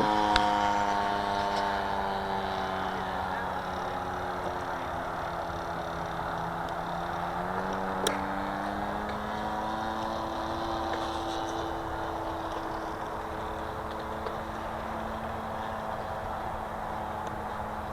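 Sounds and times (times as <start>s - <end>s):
electric motor and propeller hum: 0.0s - 17.9s.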